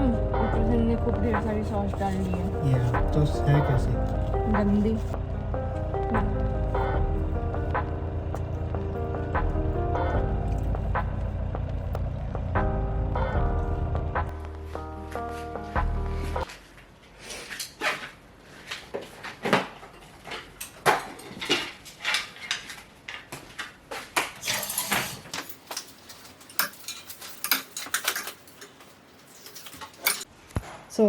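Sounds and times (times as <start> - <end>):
household items clinking: 24.4 - 30.3.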